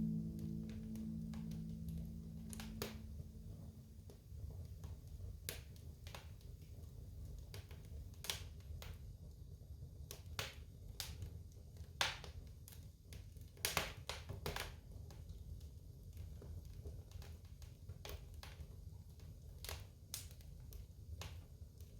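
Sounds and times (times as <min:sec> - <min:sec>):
low steady rumble: 0:00.0 - 0:03.8.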